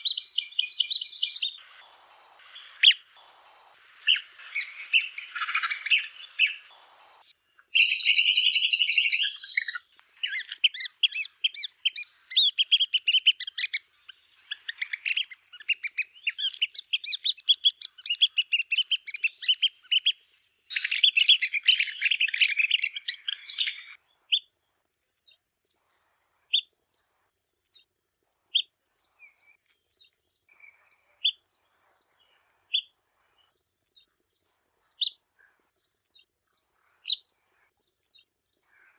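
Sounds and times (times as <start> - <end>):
woodpecker squeaky chattering calls: 0.0 - 1.8, 3.8 - 6.7, 7.8 - 24.0.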